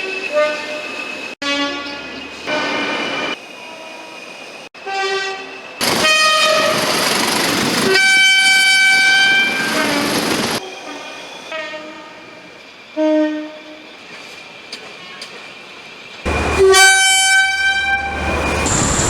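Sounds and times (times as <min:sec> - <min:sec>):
train horn blasts: 0:00.0 - 0:03.0, 0:04.8 - 0:06.8, 0:07.9 - 0:13.9, 0:16.3 - 0:18.9
moving train rushing: 0:00.0 - 0:19.0.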